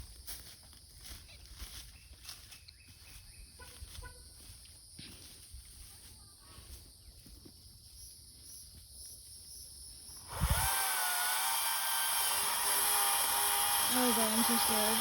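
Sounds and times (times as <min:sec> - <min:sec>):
chainsaw running: 0:10.2 - 0:15.0.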